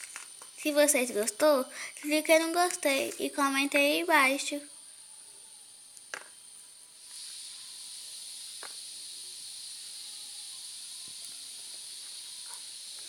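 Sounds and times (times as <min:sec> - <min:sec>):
steady high-pitched hiss: 0:00.0 - 0:13.0.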